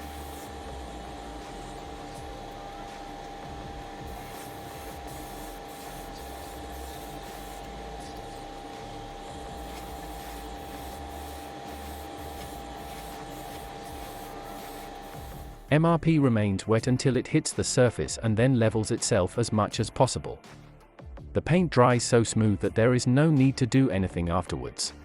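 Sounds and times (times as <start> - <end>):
airbrush air hiss: 0.0 - 15.7
compressor hum: 0.0 - 15.7.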